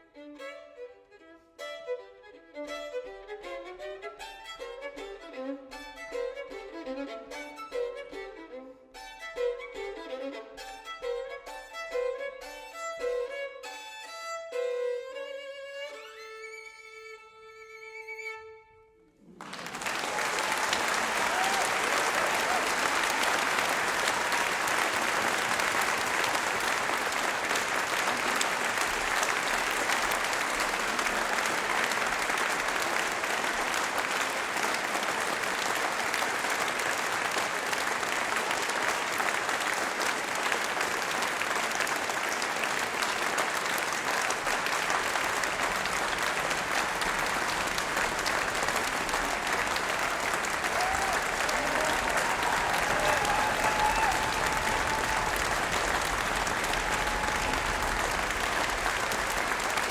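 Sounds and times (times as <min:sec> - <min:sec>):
audience applauding: 0:19.2 - 0:59.9.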